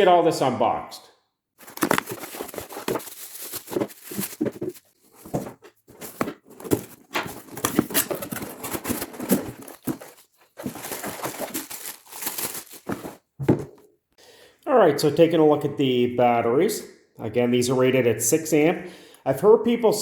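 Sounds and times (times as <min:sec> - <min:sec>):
packaging rustling: 0:01.6 - 0:13.8.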